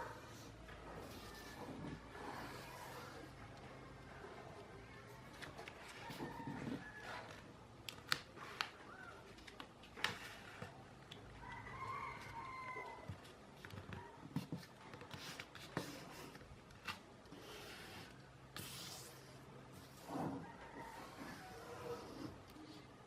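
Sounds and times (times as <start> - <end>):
rooster crowing: 5.9 - 7.4, 11.4 - 13.2, 20.2 - 22.3.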